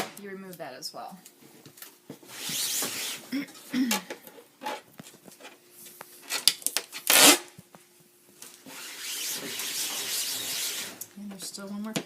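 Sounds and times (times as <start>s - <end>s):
paper towel rubbing on mesh: 8.7s - 11.0s.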